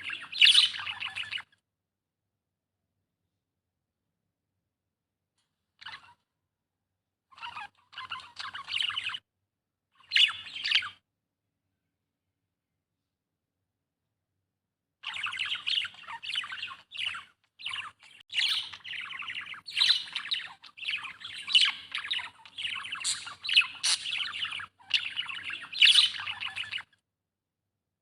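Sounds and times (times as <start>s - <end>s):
budgerigar chirping: 0.0s - 1.4s, 7.3s - 9.2s, 10.0s - 11.0s, 15.0s - 26.9s.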